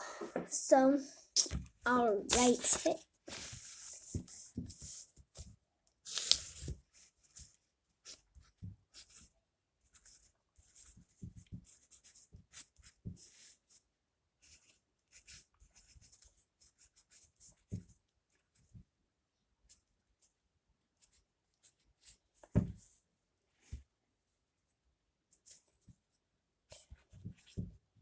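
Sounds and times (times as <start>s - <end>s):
pen scratching on paper: 8.0s - 9.3s, 9.9s - 13.6s, 14.4s - 18.7s.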